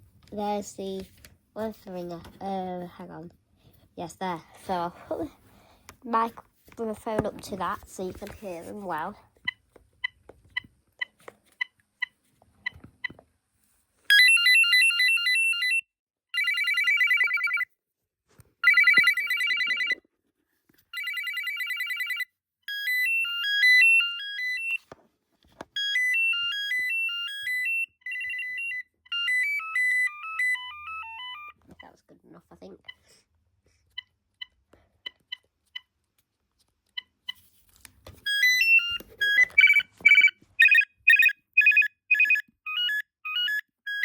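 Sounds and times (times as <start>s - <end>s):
fast warbling phone trill: 38.3s - 44.0s.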